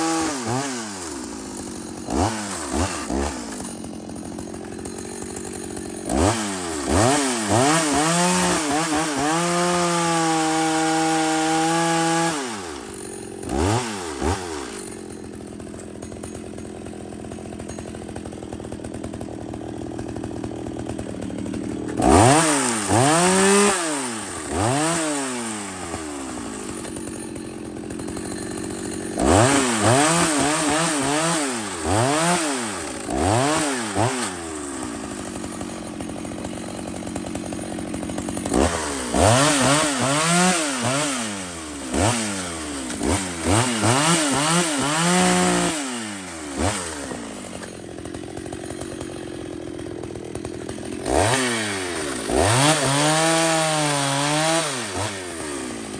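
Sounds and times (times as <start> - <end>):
chainsaw engine revving: 0.0 - 55.9.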